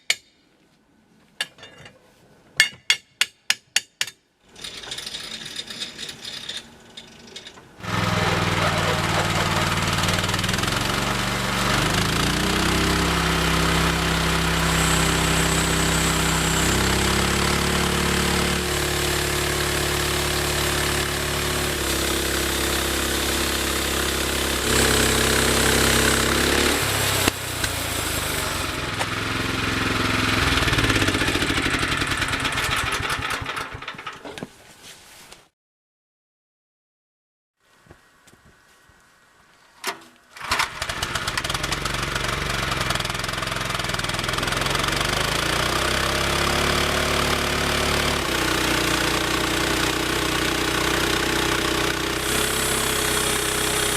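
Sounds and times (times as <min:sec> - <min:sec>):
sawmill engine running: 0:07.8 - 0:33.9, 0:40.4 - 0:53.9.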